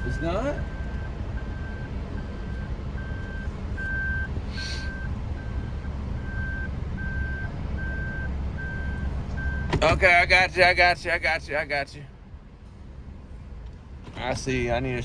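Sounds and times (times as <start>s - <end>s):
reverse warning beeper: 0.0s - 9.7s.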